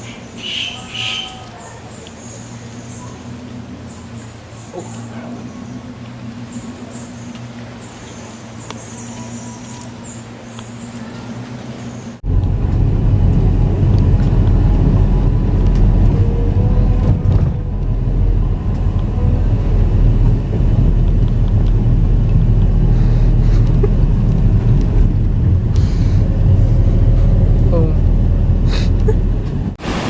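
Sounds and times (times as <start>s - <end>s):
wind rumble on microphone: 12.2s - 29.8s
sea surf: 29.8s - 30.0s.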